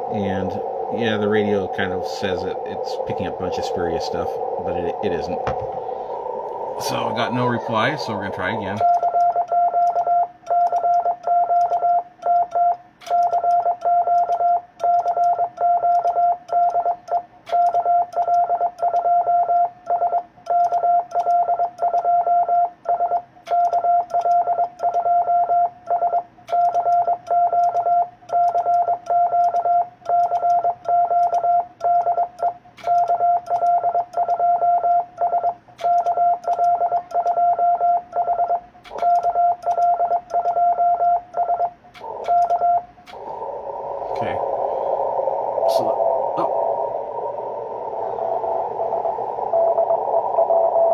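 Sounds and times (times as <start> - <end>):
morse code tone: 5.0 - 42.9.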